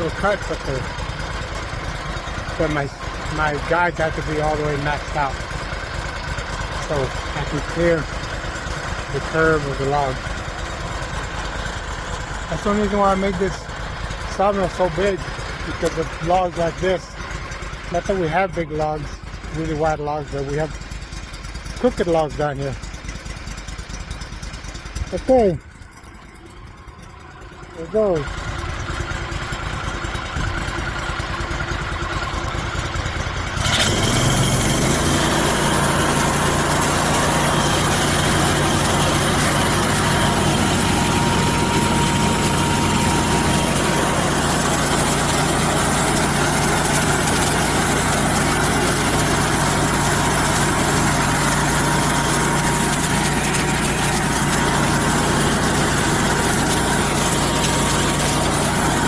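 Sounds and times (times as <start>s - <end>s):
sawmill engine running: 0.0s - 59.0s
band blade sawing through log: 33.8s - 59.0s.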